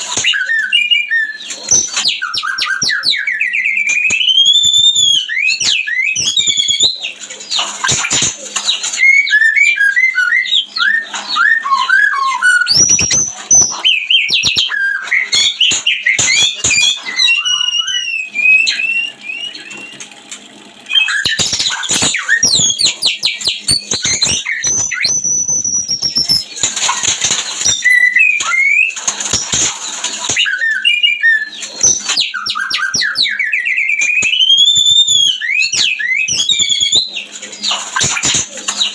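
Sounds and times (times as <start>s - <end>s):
songbird singing whistles and trills: 0.0s - 20.1s, 20.9s - 26.6s, 27.4s - 29.5s, 30.2s - 38.9s.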